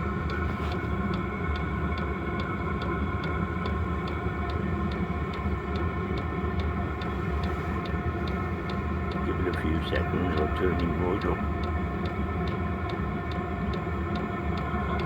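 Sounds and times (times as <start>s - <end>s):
heater fan and burner drone: 0.0s - 15.0s
fuel pump ticking: 5.3s - 15.0s.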